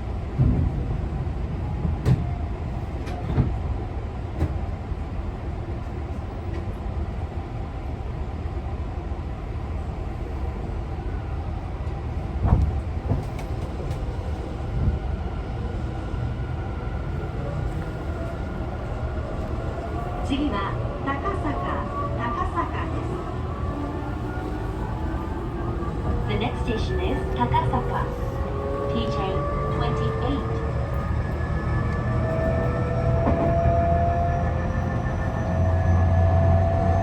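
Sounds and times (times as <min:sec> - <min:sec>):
train wheels rumbling on track: 0:00.0 - 0:37.0.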